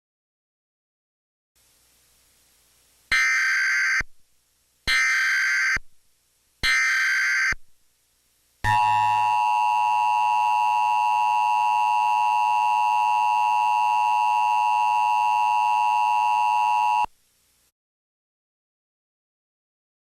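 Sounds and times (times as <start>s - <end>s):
two-tone alarm: 4.9s - 5.8s, 6.6s - 7.6s, 8.7s - 17.1s.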